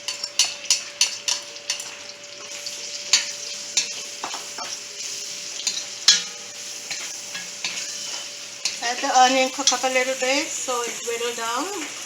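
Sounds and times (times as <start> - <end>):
spoon scraping against pot: 0.0 - 10.0
onion sizzling in hot oil: 0.0 - 12.0.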